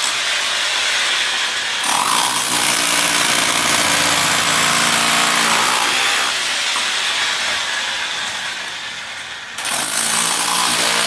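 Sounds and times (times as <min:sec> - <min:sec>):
power tool motor whining: 0:01.5 - 0:07.2, 0:09.6 - 0:11.0.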